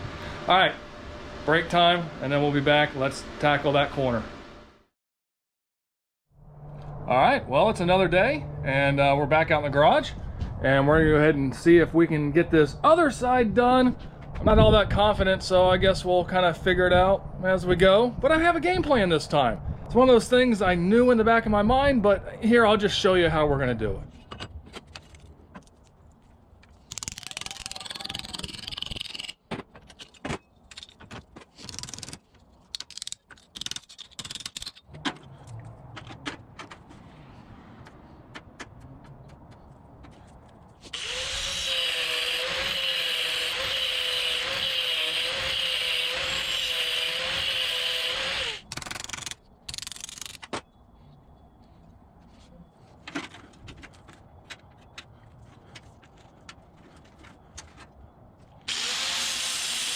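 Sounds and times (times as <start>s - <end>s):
power tool whining: 40.9s - 48.7s, 58.7s - 59.9s.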